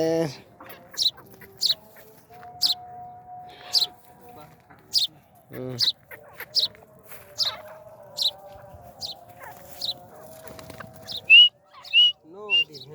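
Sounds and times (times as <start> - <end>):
bird chirping: 0.6 - 2.9, 3.6 - 4.0, 4.9 - 5.1, 5.7 - 6.7, 7.4 - 8.4, 9.0 - 10.0, 11.0 - 12.9
clear whistled bird notes: 11.1 - 12.9.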